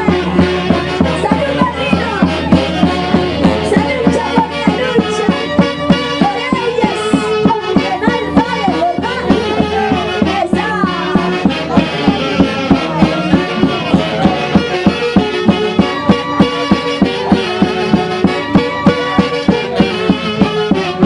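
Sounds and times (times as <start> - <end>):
live band playing folk music: 0.0 - 21.0.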